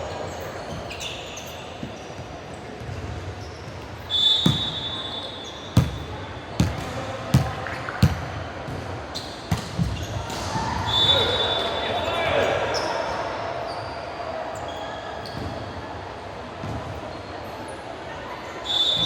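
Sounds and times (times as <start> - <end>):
basketball bouncing: 6.6 - 8.8.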